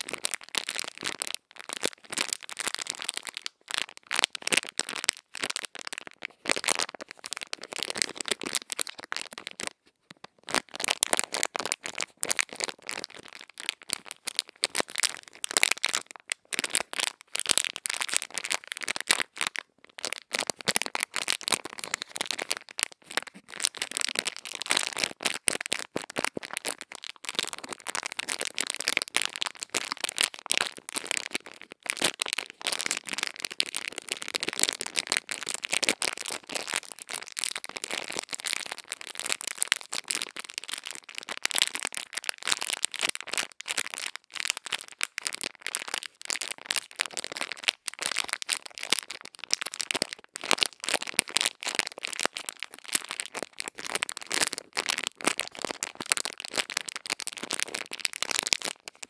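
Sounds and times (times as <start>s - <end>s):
crisp crackling and scratching: 41.0s - 59.0s.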